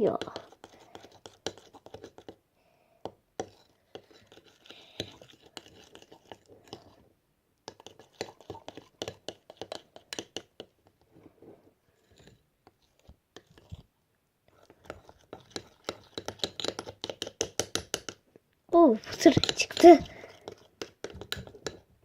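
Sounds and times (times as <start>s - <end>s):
spoon scraping in a bowl: 0.1s - 2.4s, 3.4s - 7.0s, 7.7s - 10.6s, 12.0s - 13.8s, 14.6s - 18.1s, 19.0s - 21.9s.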